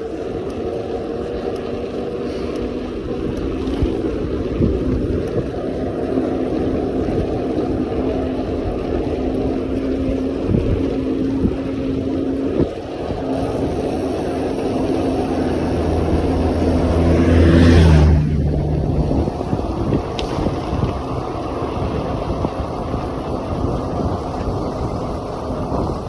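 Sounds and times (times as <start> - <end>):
road and wind noise: 0.0 - 26.0
car engine hum: 11.8 - 26.0.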